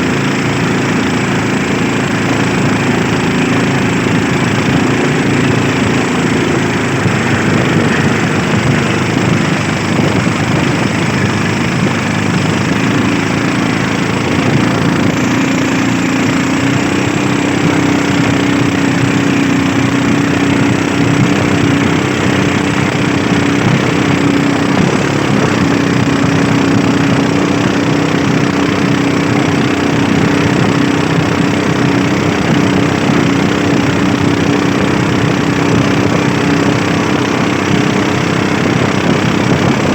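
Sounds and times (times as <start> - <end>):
boat engine running: 0.0 - 39.9.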